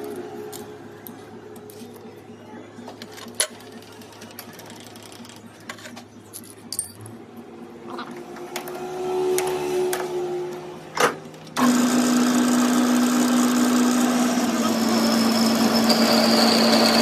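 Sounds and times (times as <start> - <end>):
machine motor humming: 7.4 - 17.0.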